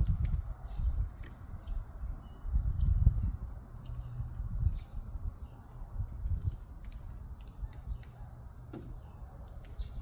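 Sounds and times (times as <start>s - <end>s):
bird pecking clicks: 5.6s - 8.3s, 9.4s - 10.0s.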